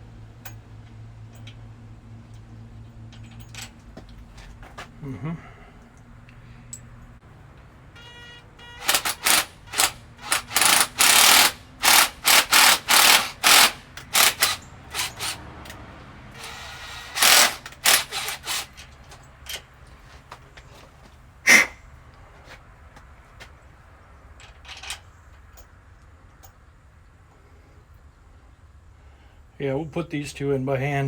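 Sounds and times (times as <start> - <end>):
pneumatic tool bursts: 8.7 - 15.4, 16.4 - 18.9, 21.5 - 21.8.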